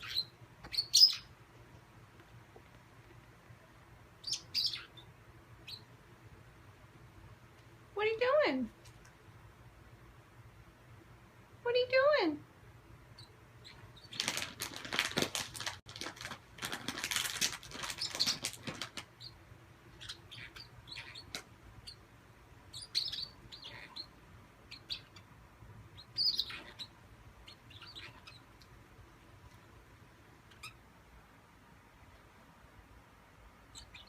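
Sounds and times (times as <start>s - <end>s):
bird chirps and clicks: 0.0s - 1.2s, 17.9s - 19.3s, 20.0s - 22.0s, 26.0s - 26.9s, 27.5s - 28.7s, 30.5s - 30.8s
bird fluttering crackle: 14.1s - 19.1s.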